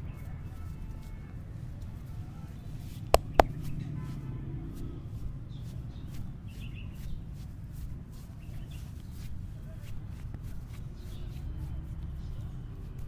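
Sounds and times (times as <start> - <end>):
sharp cracks: 3.2 - 3.6.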